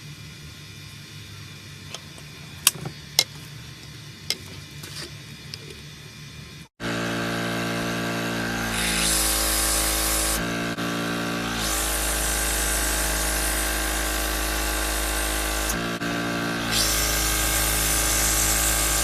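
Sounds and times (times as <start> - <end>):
power tool motor running: 6.8 - 19.0.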